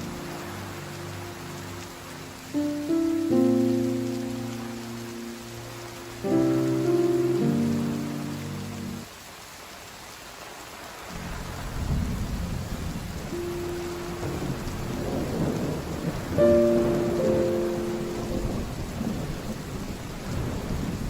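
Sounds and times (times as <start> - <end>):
steady rain: 0.0 - 21.0
thunder rumbling: 11.1 - 21.0.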